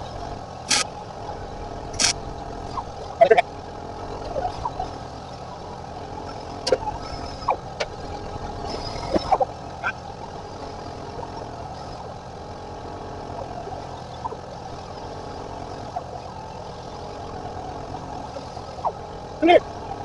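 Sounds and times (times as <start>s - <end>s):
steady mechanical hum: 0.0s - 20.0s
sharp metallic clicks: 0.6s - 0.9s, 1.9s - 2.8s.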